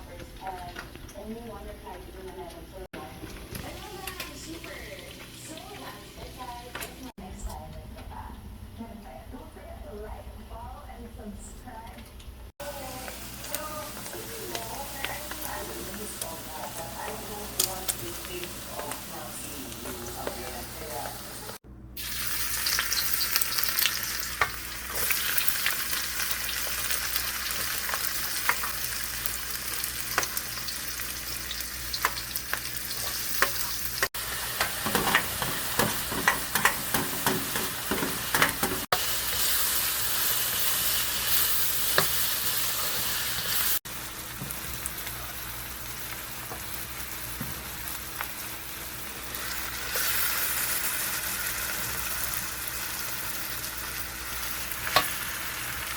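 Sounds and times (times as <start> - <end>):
food sizzling in a pan: 12.6 - 55.9.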